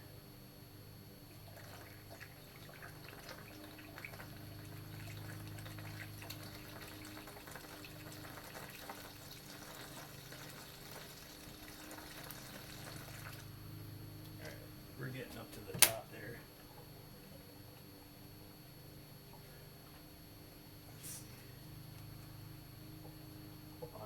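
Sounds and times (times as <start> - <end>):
steady low hum: 0.0 - 24.0
liquid trickling into reservoir: 1.4 - 13.5.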